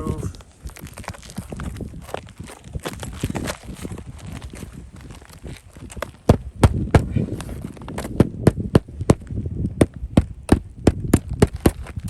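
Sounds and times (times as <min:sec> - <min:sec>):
hammering on a shingle roof: 0:06.2 - 0:07.2, 0:07.9 - 0:11.9.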